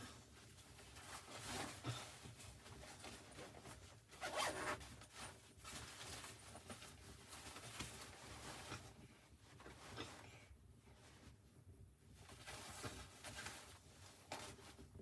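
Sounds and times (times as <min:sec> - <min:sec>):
zipper pulled: 0:04.2 - 0:04.8.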